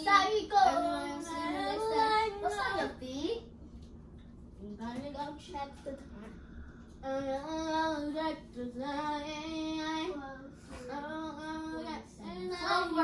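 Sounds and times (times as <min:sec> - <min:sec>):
girl singing: 0:00.0 - 0:03.4, 0:07.0 - 0:13.0
breaths: 0:06.2 - 0:07.0.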